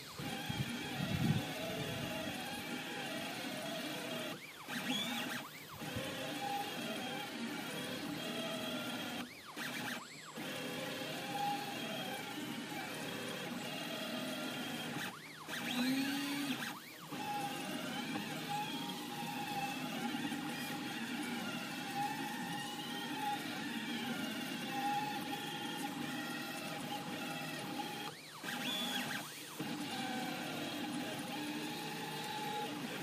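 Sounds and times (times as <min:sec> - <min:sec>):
printer stepper motors whining: 0:00.0 - 0:33.0.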